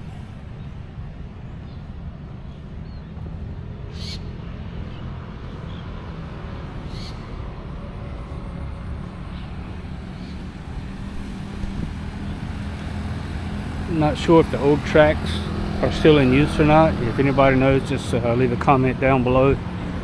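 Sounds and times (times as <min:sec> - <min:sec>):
busy road traffic rumble: 0:00.0 - 0:20.0.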